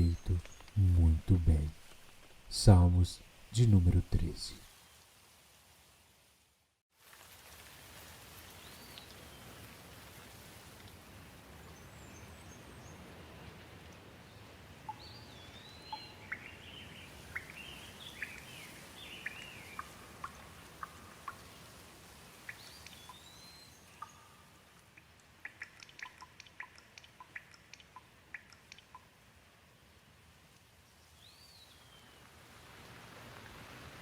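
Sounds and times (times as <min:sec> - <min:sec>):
water dripping: 0:00.0 - 0:03.6, 0:17.2 - 0:29.3
faint steady rain: 0:00.0 - 0:34.0
bird chirping: 0:14.9 - 0:21.4, 0:22.4 - 0:29.1.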